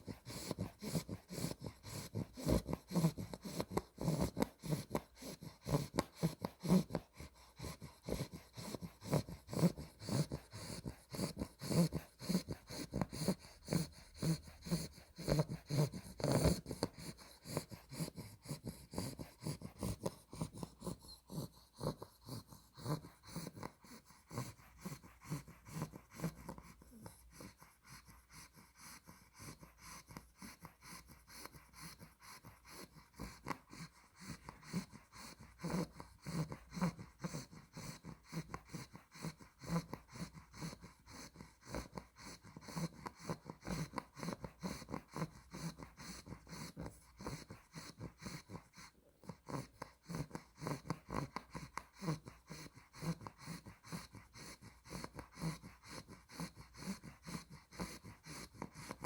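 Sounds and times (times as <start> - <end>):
puppy snoring: 0.0 - 59.0.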